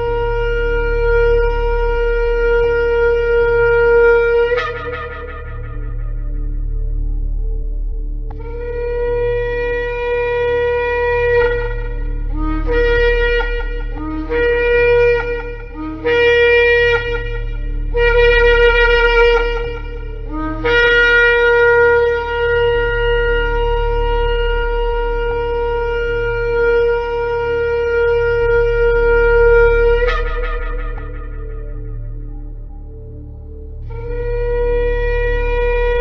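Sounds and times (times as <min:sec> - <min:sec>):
steady low hum: 0:00.0 - 0:36.0
ram's horn blasts: 0:08.3 - 0:36.0.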